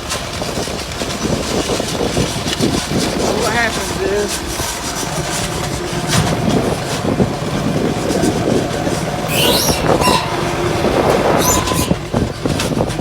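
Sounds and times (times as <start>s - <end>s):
metal rattling and clanking: 0.0s - 13.0s
tractor engine running: 0.0s - 13.0s
brief squeal: 9.3s - 12.2s.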